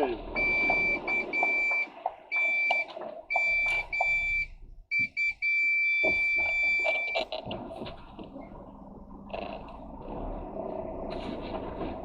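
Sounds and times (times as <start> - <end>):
vehicle reversing alarm beeping: 0.2 - 7.4.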